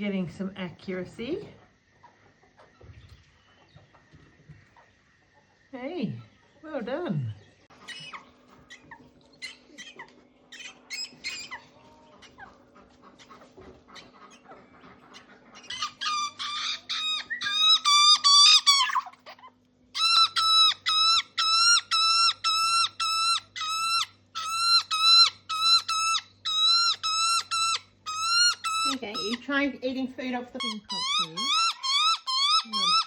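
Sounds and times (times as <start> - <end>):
magpie fledgling calling: 7.9 - 11.7, 15.6 - 19.2, 20.0 - 33.0.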